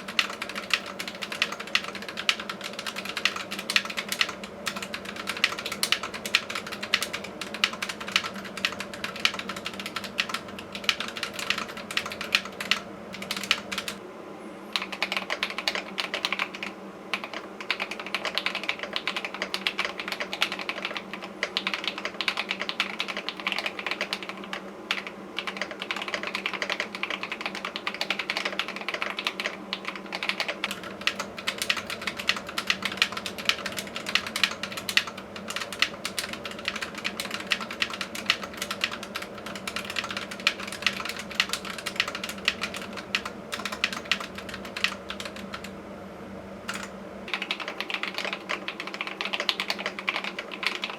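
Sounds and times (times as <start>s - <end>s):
mechanical keyboard typing: 0.0s - 14.0s, 14.8s - 45.7s, 46.7s - 50.9s.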